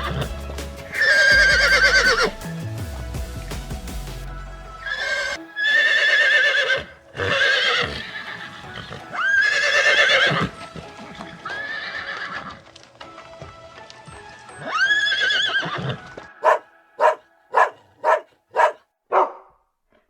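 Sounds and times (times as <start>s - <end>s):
horse whinnying: 0.0s - 2.4s, 4.8s - 12.8s, 14.6s - 17.2s.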